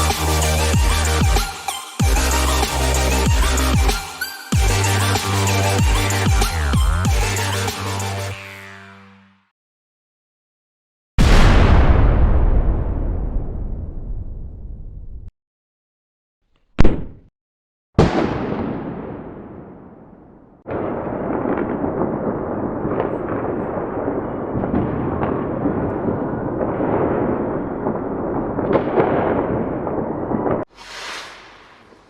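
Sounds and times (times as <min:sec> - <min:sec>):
crackling rumbling blast with pops: 0:11.2 - 0:15.3, 0:18.0 - 0:32.0
large explosion rumbling: 0:11.2 - 0:15.3, 0:18.0 - 0:32.0
sharp explosion blast: 0:11.2 - 0:15.3, 0:16.8 - 0:17.3, 0:18.0 - 0:23.5.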